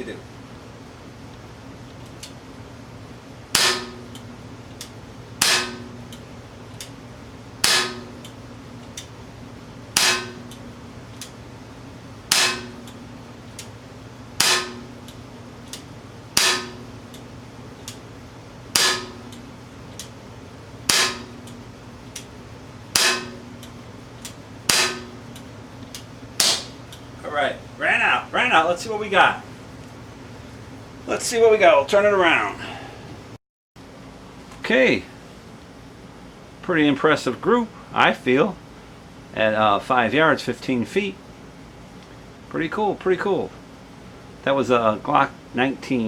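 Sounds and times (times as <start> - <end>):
bb pistol shots: 3.6 - 4.2, 5.4 - 6.0, 10.0 - 10.6, 12.3 - 13.0, 14.4 - 15.0, 16.4 - 17.0, 18.8 - 19.3, 20.9 - 21.4, 23.0 - 23.5, 24.7 - 25.2, 26.4 - 26.8.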